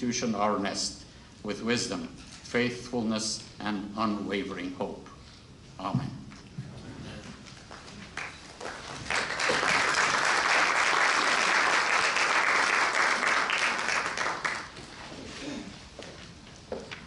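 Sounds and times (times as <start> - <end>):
audience applauding: 7.7 - 14.8.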